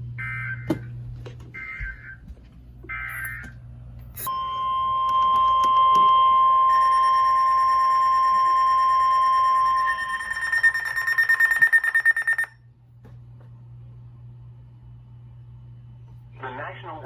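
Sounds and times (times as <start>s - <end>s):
steady warning alarm tone: 0.0s - 0.9s, 1.5s - 3.6s, 4.2s - 12.7s
higher tone: 4.2s - 12.5s
rapid beeping: 6.3s - 12.6s
warbling data burst: 6.7s - 12.5s.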